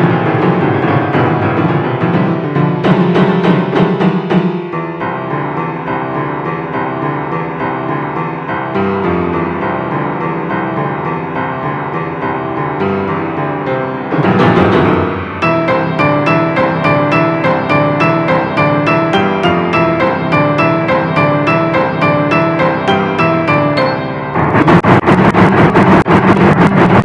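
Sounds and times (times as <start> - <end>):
ringtone melody: 15.4 - 24.8.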